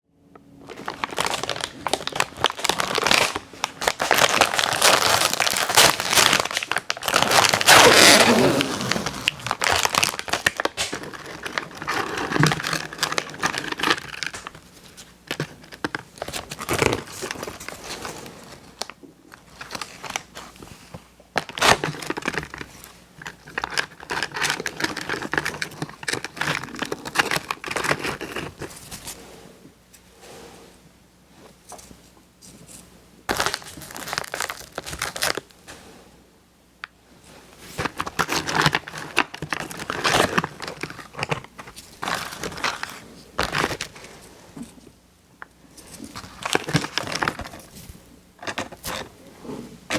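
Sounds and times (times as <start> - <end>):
plastic tearing: 0.6 - 20.6, 21.4 - 28.9, 33.3 - 35.5, 37.7 - 44.1, 45.8 - 47.8
plastic packaging crinkling: 0.6 - 28.9, 33.3 - 35.5, 37.6 - 44.2, 45.7 - 49.3.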